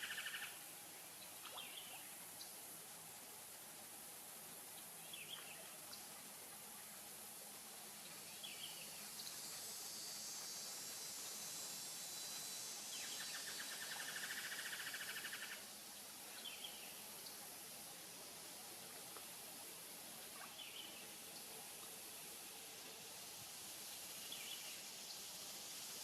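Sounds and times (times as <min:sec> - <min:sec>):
high insect hiss: 0:00.0 - 0:26.0
rapid rattling call: 0:13.1 - 0:15.7.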